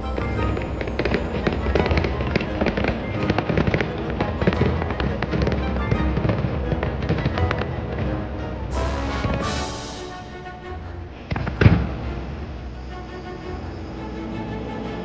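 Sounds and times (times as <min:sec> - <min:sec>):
loud music: 0:00.0 - 0:11.8.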